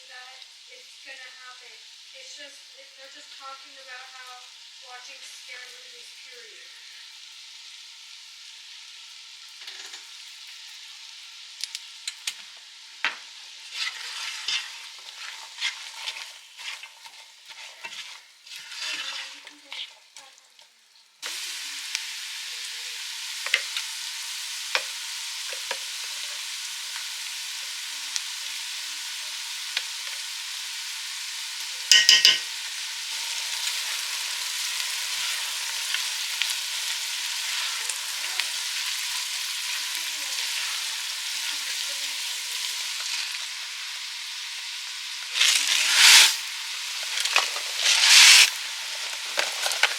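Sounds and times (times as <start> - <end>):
food sizzling in a pan: 0.0 - 49.9
utensil stirring and scraping: 13.6 - 20.1, 34.9 - 39.1, 45.3 - 46.4, 47.0 - 49.9.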